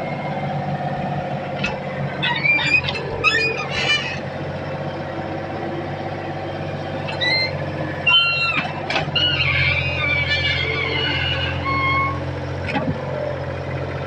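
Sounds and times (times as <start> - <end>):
diesel engine running: 0.0 - 14.0
high metallic squeaks: 2.2 - 4.2, 7.1 - 12.3.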